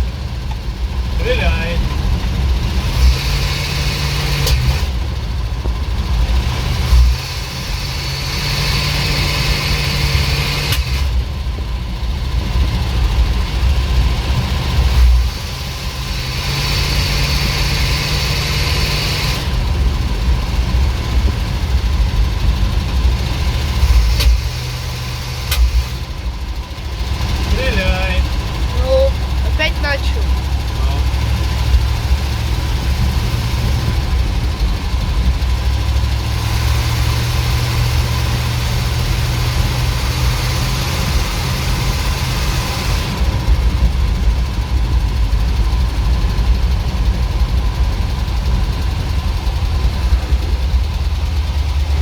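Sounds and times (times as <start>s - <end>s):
truck engine revving: 0.0s - 52.0s
engine backfiring pops: 3.0s - 5.8s, 23.6s - 26.2s.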